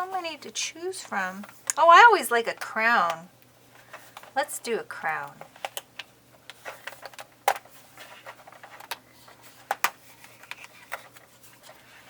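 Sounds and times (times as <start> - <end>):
pieces rustling in hands: 3.7 - 12.0.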